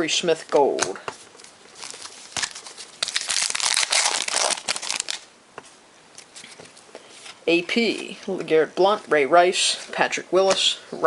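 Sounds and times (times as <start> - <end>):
wrapper tearing and crinkling: 1.4 - 5.3.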